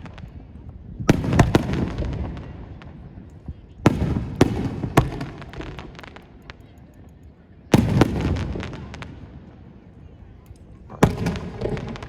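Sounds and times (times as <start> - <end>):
fireworks bangs: 1.1 - 3.1, 3.8 - 6.2, 7.7 - 9.4, 10.9 - 12.0
fireworks crackling: 10.6 - 12.0.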